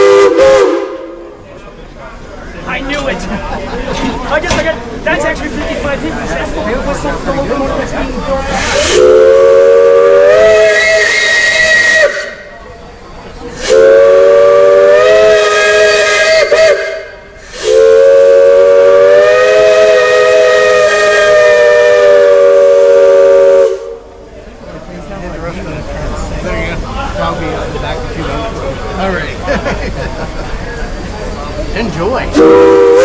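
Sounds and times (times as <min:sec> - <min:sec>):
steam locomotive chime whistle: 0:00.0 - 0:01.2, 0:08.6 - 0:12.6, 0:13.5 - 0:24.0, 0:32.3 - 0:33.0.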